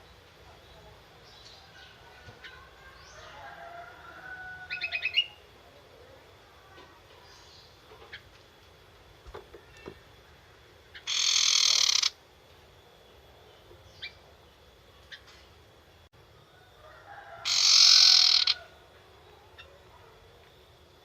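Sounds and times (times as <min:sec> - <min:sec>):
bird harsh rattling call: 0:11.0 - 0:12.2, 0:17.4 - 0:18.6.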